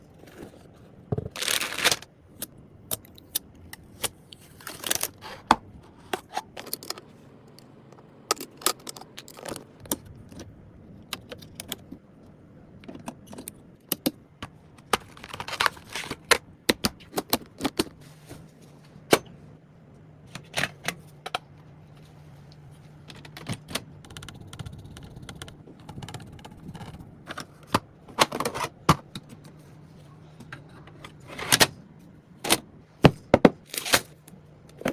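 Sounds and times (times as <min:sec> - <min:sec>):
clicks and taps of computer parts: 0:23.1 - 0:26.3.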